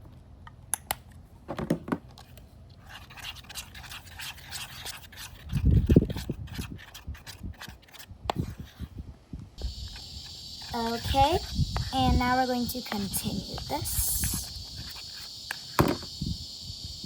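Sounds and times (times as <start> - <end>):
slime being stirred: 2.8 - 8.9.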